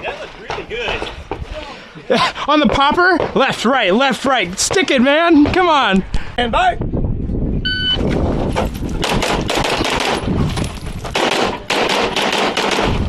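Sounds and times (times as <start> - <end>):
electronic timer beep: 7.6 - 8.0
rapid handgun fire: 9.0 - 10.3, 11.2 - 13.0.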